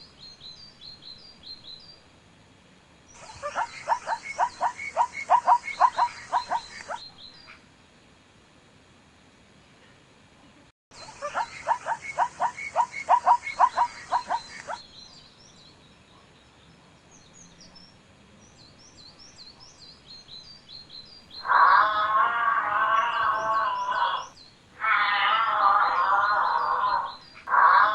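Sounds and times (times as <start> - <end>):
faint high chirping: 3.1 - 7.6, 11.0 - 17.9, 18.6 - 27.9
animal calling: 3.2 - 7.6, 11.0 - 14.8, 21.4 - 27.9.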